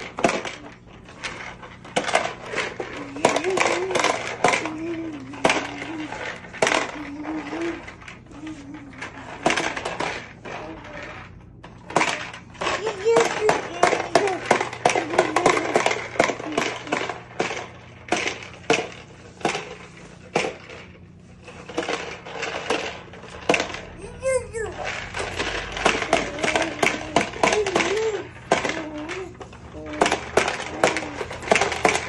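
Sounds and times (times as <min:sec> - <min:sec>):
plastic vacuum cleaner clattering: 0:00.0 - 0:32.0
young child babbling: 0:24.0 - 0:24.8, 0:26.1 - 0:30.0.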